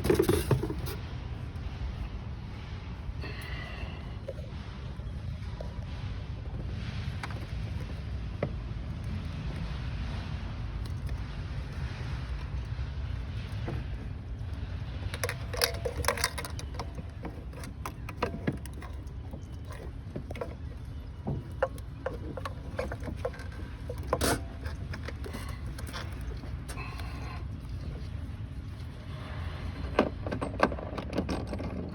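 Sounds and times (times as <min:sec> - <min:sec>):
tools and parts clicking and knocking: 0:00.0 - 0:01.0, 0:15.1 - 0:27.2, 0:29.8 - 0:31.9
steady low rumble: 0:00.0 - 0:31.2.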